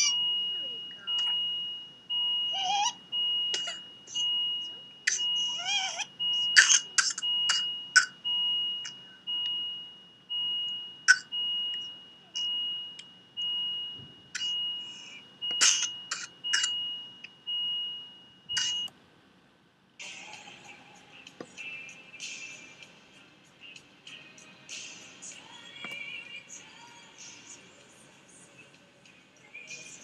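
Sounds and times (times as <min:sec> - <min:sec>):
two-tone electronic beep: 0:00.0 - 0:18.9.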